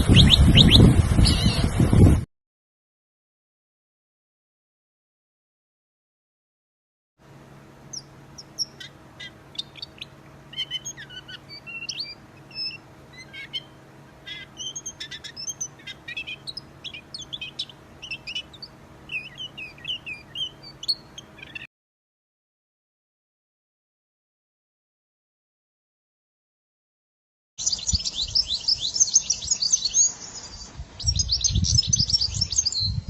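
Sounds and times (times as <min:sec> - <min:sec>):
songbird chirping and twittering: 0:00.0 - 0:02.0, 0:07.8 - 0:21.7, 0:27.6 - 0:33.0
faint steady low hum: 0:07.2 - 0:21.7.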